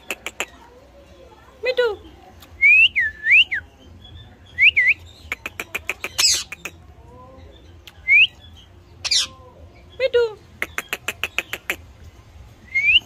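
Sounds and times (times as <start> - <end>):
parakeet squawk: 5.2 - 6.8, 9.0 - 9.3, 10.5 - 11.9.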